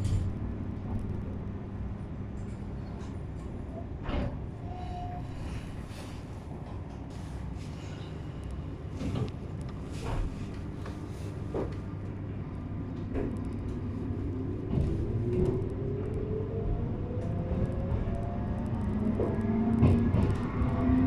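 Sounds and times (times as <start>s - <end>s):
electric train rumbling: 0.0s - 21.0s
rising train motor whine: 11.5s - 21.0s
train knocks: 19.1s - 20.7s.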